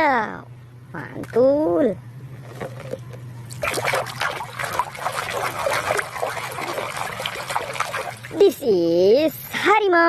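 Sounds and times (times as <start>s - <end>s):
low steady hum: 0.0s - 10.0s
water splashing and trickling: 3.5s - 8.6s.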